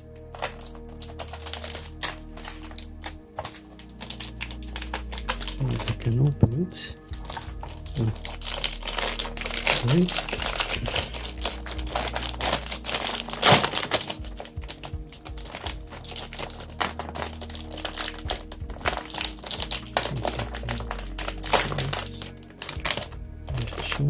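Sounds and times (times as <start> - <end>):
faint background music: 0.0 - 24.0
packaging rustling and crinkling: 0.0 - 24.0.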